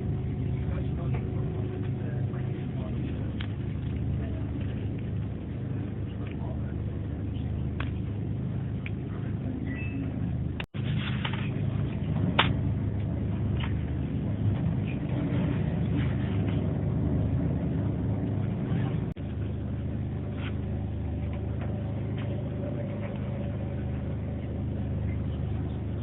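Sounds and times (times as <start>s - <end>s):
train coach low rumble: 0.0s - 26.0s.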